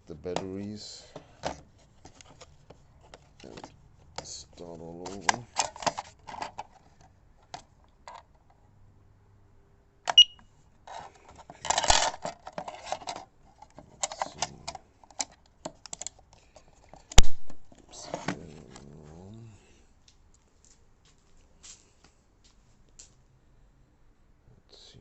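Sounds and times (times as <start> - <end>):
short high beep: 10.1 - 10.4
batteries clicking and clattering: 10.9 - 18.0.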